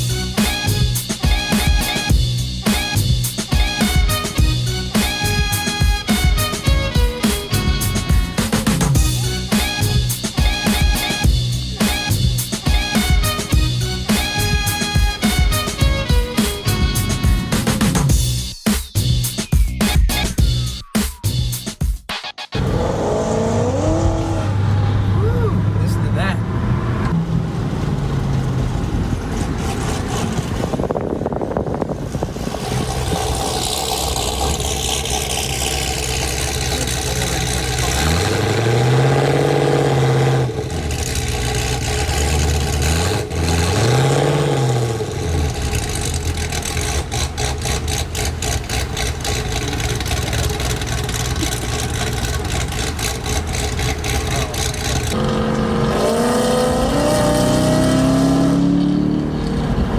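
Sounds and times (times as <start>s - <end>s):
car engine revving: 0.0s - 20.7s, 22.6s - 59.9s.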